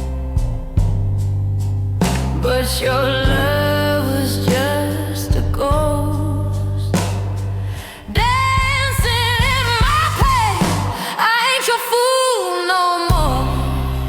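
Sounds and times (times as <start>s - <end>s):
slow blues ballad: 0.0s - 11.0s.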